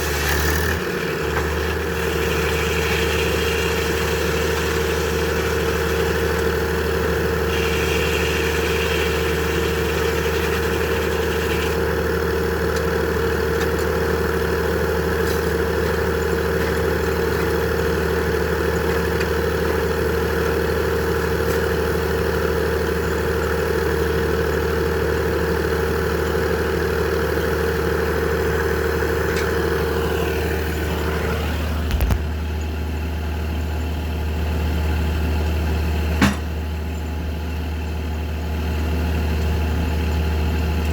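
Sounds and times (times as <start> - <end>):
sawmill humming and whining: 0.0 - 40.9.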